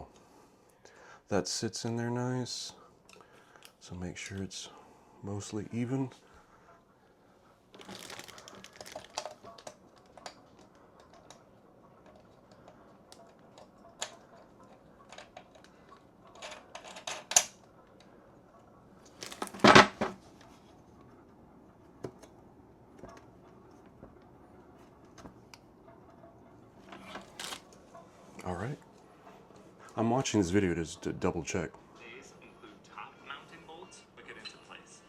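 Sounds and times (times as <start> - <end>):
parts clattering: 7.8 - 11.3, 19.1 - 20.2
small hard parts clicking: 7.8 - 11.4.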